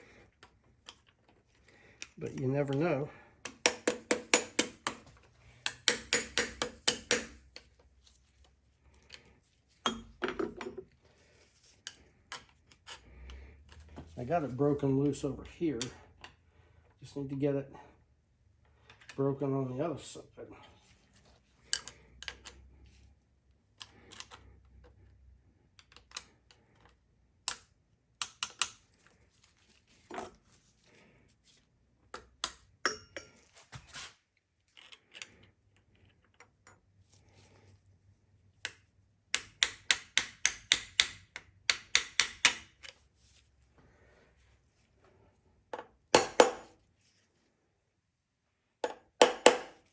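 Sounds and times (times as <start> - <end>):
metallic tool clicks and knocks: 5.6 - 7.6, 27.5 - 28.8, 38.6 - 43.0.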